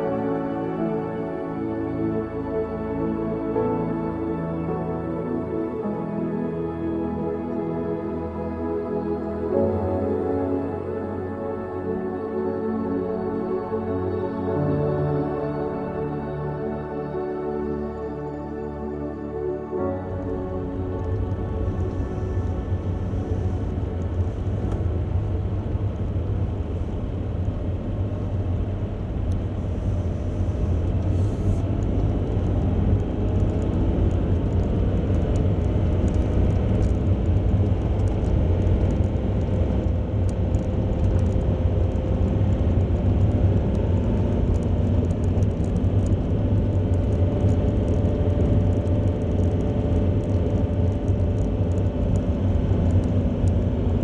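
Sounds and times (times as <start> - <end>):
vehicle engine rumbling: 20.1 - 54.0.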